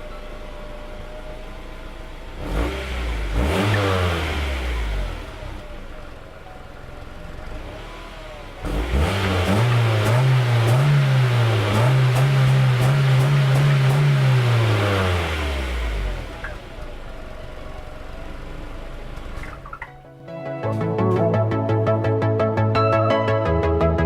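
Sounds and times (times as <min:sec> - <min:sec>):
car engine revving: 0:01.7 - 0:06.3, 0:07.0 - 0:19.7.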